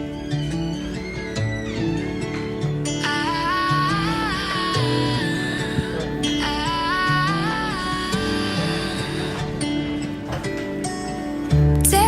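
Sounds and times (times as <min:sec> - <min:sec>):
pop song: 0:02.8 - 0:12.0.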